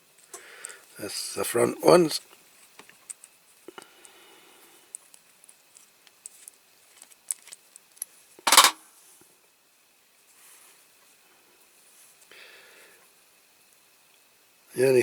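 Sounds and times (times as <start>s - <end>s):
small parts clicking and tapping: 2.6s - 4.2s, 4.9s - 8.8s.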